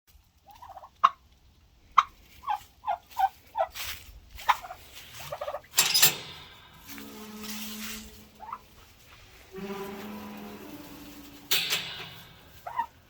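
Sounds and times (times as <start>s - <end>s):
turkeys gobbling: 0.4s - 1.3s, 1.9s - 3.8s, 4.4s - 5.8s, 8.4s - 9.5s, 12.4s - 13.0s
rustling: 2.1s - 13.0s.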